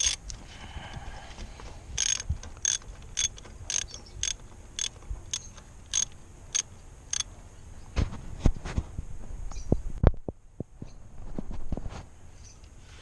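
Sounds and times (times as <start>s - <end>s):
socket ratchet clicking: 2.0s - 7.2s.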